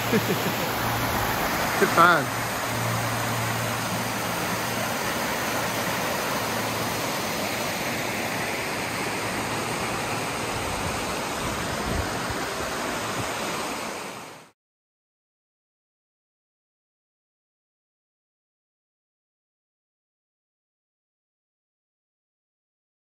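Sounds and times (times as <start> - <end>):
creek water rushing: 0.0 - 14.5.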